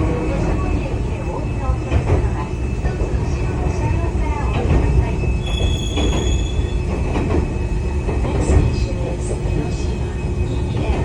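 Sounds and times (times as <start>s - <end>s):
train rumbling: 0.0s - 11.0s
wheel squeal: 5.4s - 6.9s.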